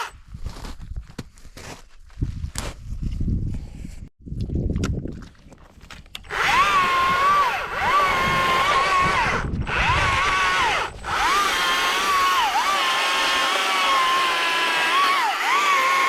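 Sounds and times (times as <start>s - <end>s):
electric chainsaw cutting wood: 6.3s - 16.0s.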